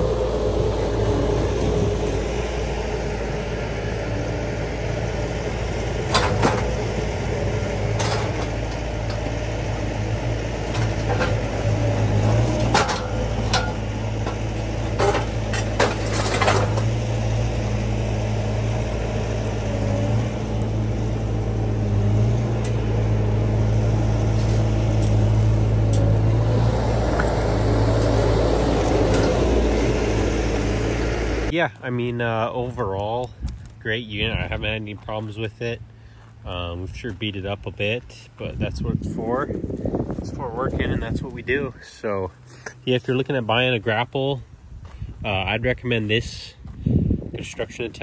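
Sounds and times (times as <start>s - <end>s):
skid steer engine running: 0.0s - 36.8s
metallic knocks and clanks: 6.0s - 6.8s, 7.9s - 9.4s, 10.6s - 17.0s.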